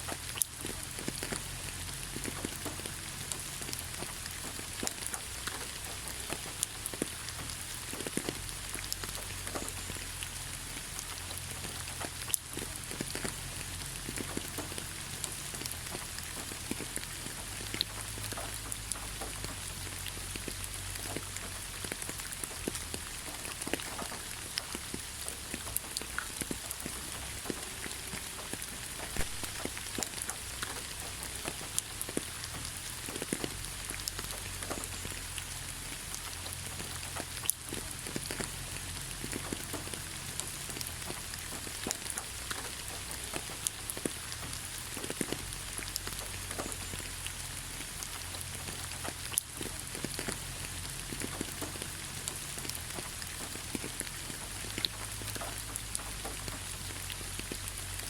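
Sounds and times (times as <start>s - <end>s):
rain falling on leaves: 0.0s - 58.0s.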